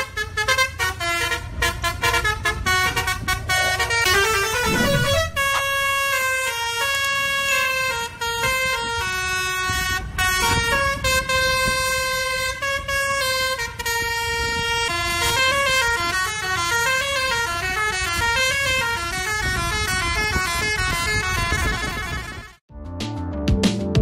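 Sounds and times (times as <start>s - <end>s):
multi-tone bus horn tune: 0.0s - 22.6s
low rumble: 4.6s - 6.0s.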